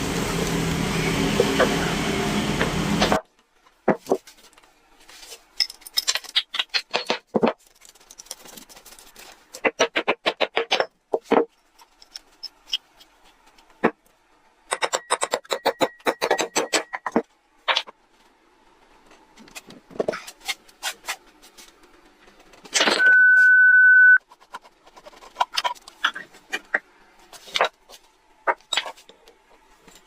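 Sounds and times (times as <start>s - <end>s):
metal tools clinking and knocking: 5.6s - 7.0s.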